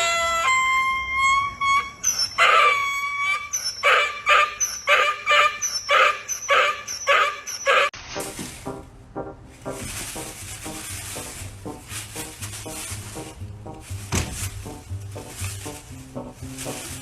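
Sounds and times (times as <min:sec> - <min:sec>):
dog howling and yipping: 0:02.0 - 0:07.9.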